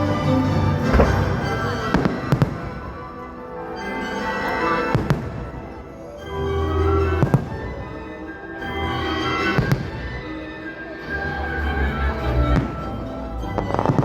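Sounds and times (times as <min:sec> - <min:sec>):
music soundtrack: 0:00.0 - 0:14.0
fireworks bangs: 0:00.8 - 0:03.3.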